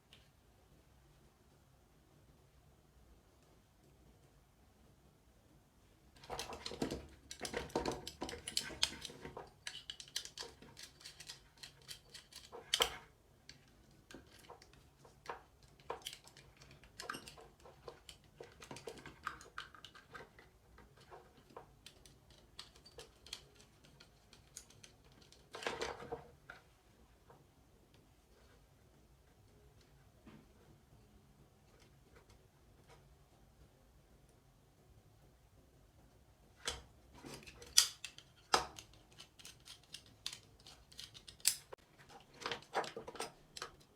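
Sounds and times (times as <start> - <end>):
small hard objects clicking and rattling: 6.2 - 20.4.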